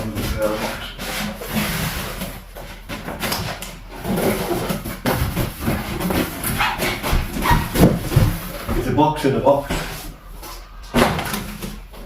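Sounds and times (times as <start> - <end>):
cardboard box rustling and scraping: 0.0 - 3.2, 3.9 - 8.8.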